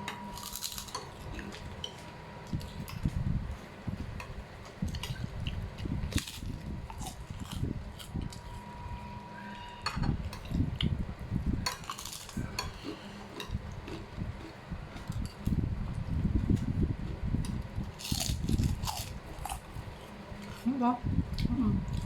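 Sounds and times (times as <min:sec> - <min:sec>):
person chewing: 0:00.4 - 0:03.1, 0:04.9 - 0:08.5, 0:11.7 - 0:15.6, 0:17.1 - 0:20.6.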